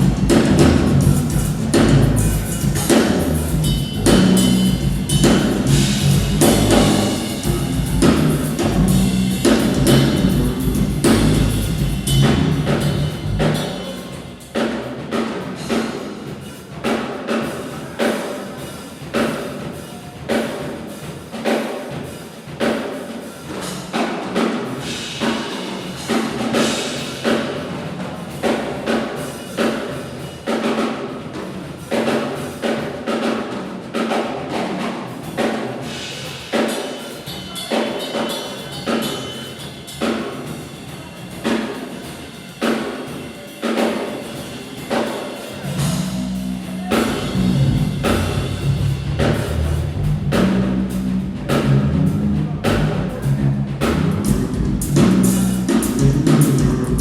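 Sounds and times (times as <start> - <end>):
heavy deep bass: 0.0 - 14.7, 45.6 - 57.0
drum kit played live: 0.0 - 57.0.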